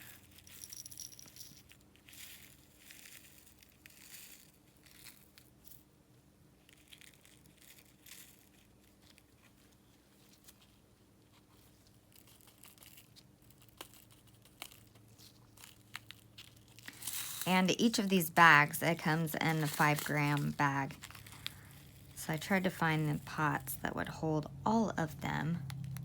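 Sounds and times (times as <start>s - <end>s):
plastic bag crinkling: 11.7s - 23.9s.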